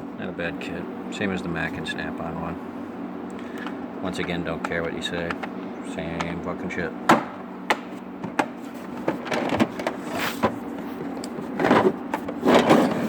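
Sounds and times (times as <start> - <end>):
cases scraping and sliding: 8.2 - 13.0.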